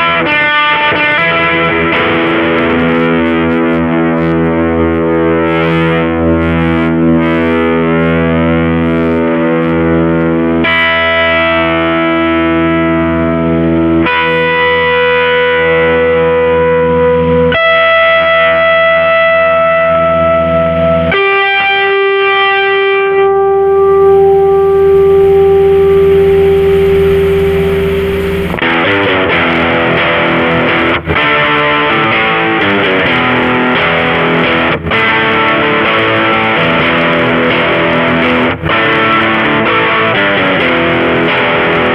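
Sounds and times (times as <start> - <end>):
distorted electric guitar chords: 0.0 - 41.9
treble hiss: 25.2 - 28.6.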